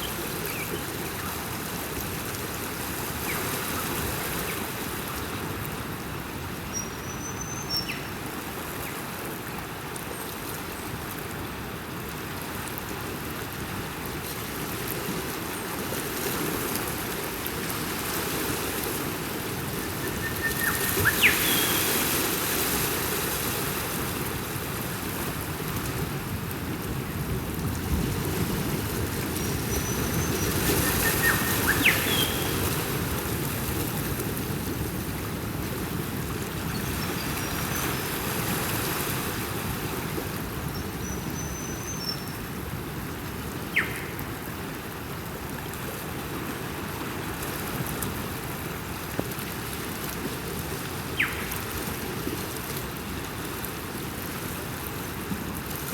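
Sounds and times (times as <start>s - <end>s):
ocean surf washing: 11.3s - 41.4s
bird chirps: 29.8s - 32.6s.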